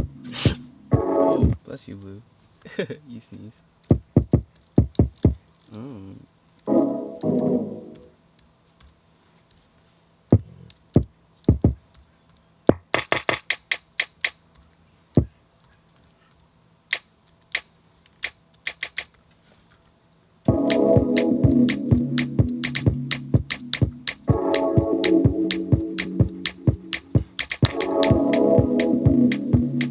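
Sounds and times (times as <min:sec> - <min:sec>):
electronic drum beat: 0:00.0 - 0:01.6, 0:03.9 - 0:05.4, 0:11.0 - 0:11.8, 0:12.7 - 0:14.3, 0:18.7 - 0:19.1, 0:20.5 - 0:29.9
electronic kick drums: 0:00.0 - 0:01.6, 0:03.9 - 0:05.4, 0:10.4 - 0:11.8, 0:20.5 - 0:29.9
clicky hi-hat taps: 0:03.8 - 0:05.4, 0:11.0 - 0:12.0, 0:12.7 - 0:14.6, 0:16.3 - 0:19.2, 0:20.5 - 0:29.9.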